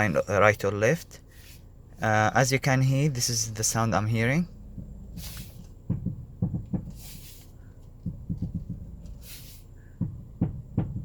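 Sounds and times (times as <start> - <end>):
suspension clunking: 0.0 - 11.0
short hisses: 5.2 - 5.7, 6.9 - 7.6, 9.2 - 9.8.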